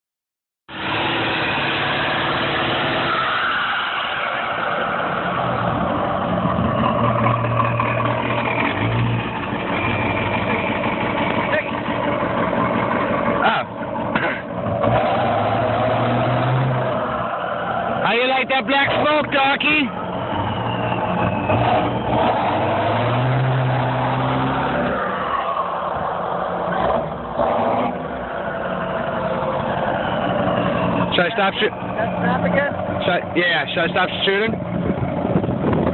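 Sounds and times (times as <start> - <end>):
pickup truck engine under load: 0.8 - 18.0
pickup engine running hard: 5.0 - 17.3, 25.9 - 35.9.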